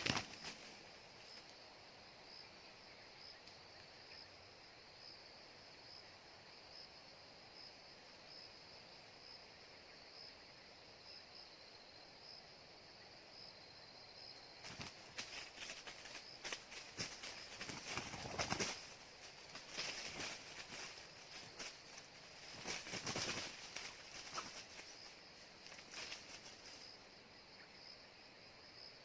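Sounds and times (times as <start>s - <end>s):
high-pitched insect trill: 0.0s - 29.0s
rustling and clicks: 14.6s - 24.9s, 25.6s - 26.8s.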